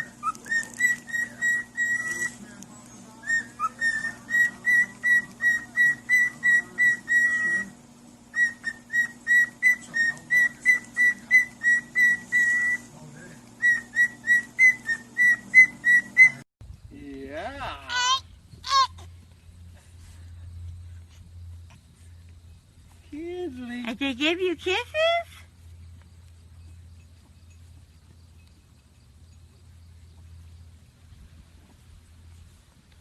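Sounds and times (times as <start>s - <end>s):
high-pitched whistle-like peeps: 0.0s - 2.4s, 13.6s - 16.4s
low steady hum: 0.0s - 33.0s.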